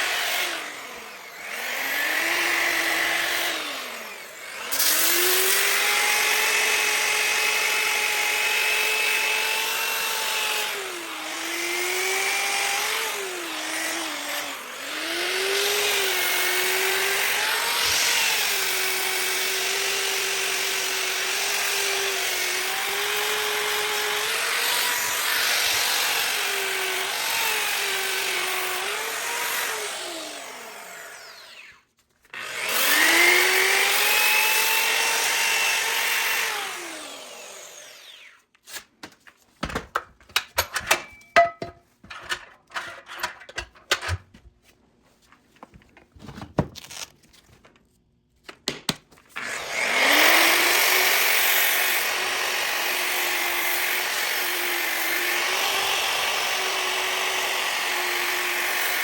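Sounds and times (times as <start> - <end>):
clicks and knocks: 39.0 - 44.4
grinder sanding metal: 40.6 - 44.2.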